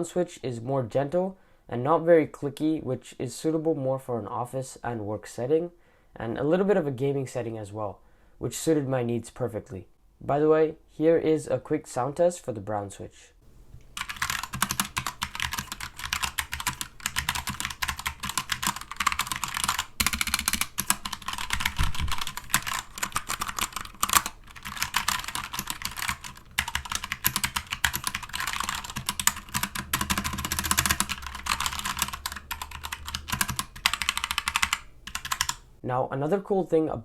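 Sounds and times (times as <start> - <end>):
mechanical keyboard typing: 14.0 - 35.7.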